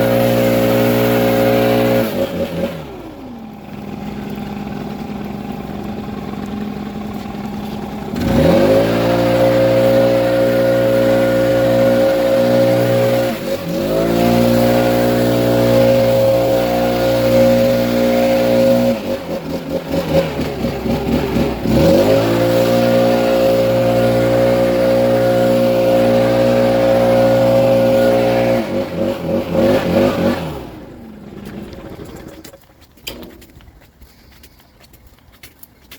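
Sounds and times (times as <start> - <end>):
leaf blower engine revving: 0.0 - 32.5.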